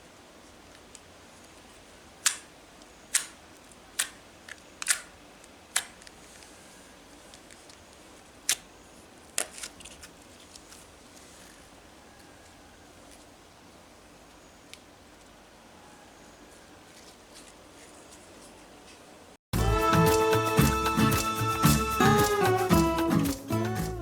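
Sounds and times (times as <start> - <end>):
faint background hiss: 0.0 - 24.0
sharp clicks and snaps: 2.2 - 6.2.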